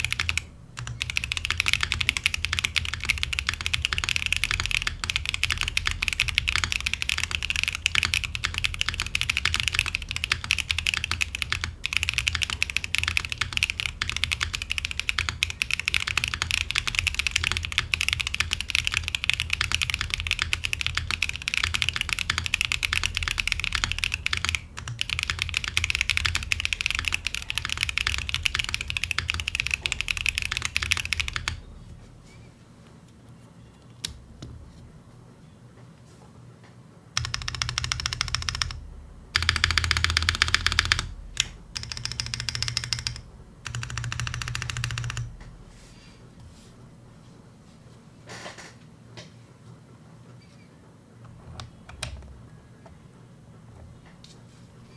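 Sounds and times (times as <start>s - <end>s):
fast typing on mechanical keyboard: 0.0s - 31.7s, 37.2s - 45.3s.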